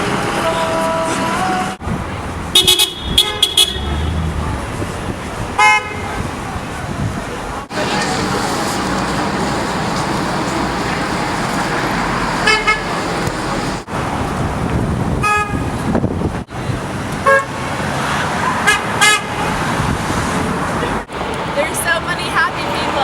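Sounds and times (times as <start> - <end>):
passing road traffic: 0.0 - 23.0
car horns honking: 2.5 - 4.4, 5.6 - 6.1, 7.7 - 13.9, 15.2 - 15.8, 17.2 - 17.5.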